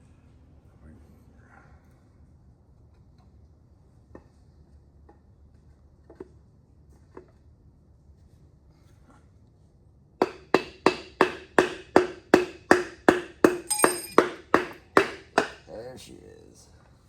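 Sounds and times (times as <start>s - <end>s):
rubber mallet knocking on wood: 10.2s - 15.6s
brief metallic ring: 13.7s - 14.3s.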